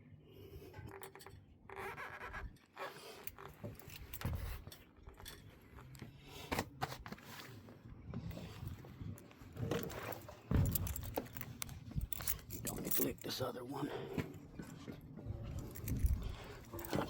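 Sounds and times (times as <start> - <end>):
heavy thump: 10.5 - 11.2.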